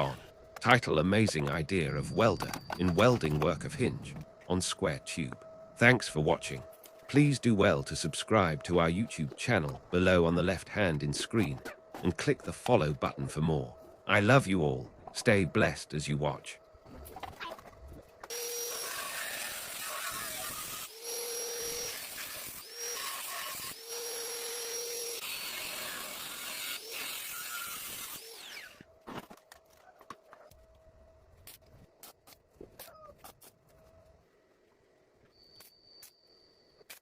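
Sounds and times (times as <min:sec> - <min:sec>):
power tool working metal: 0:18.3 - 0:28.8.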